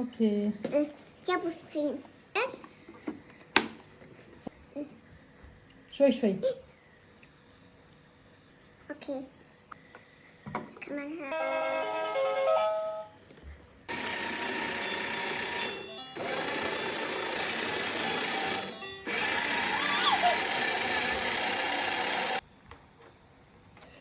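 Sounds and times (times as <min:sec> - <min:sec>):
toy washing machine motor: 0:13.9 - 0:22.4.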